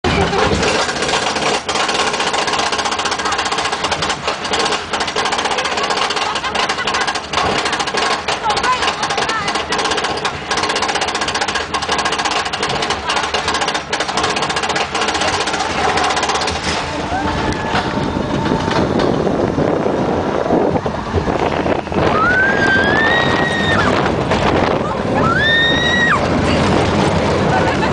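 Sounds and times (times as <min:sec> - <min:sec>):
roller coaster rattling on track: 0:00.0 - 0:27.9
wind on microphone: 0:16.4 - 0:27.9.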